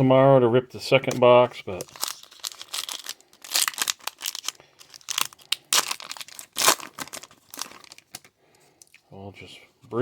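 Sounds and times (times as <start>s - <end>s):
wrapper tearing and crinkling: 1.7s - 8.3s.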